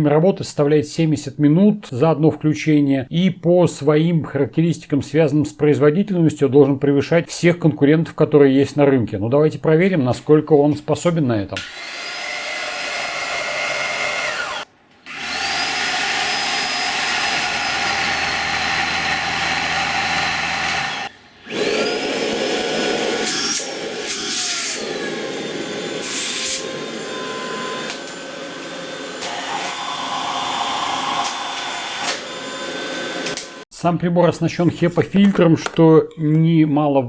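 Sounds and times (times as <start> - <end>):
stick vacuum motor whine: 11.6 - 33.6.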